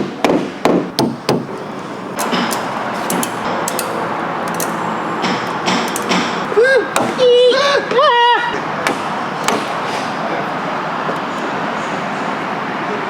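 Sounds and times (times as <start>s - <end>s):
hammer tapping sheet metal: 0.9s - 7.4s, 8.8s - 10.2s
scattered clicks: 2.2s - 6.5s.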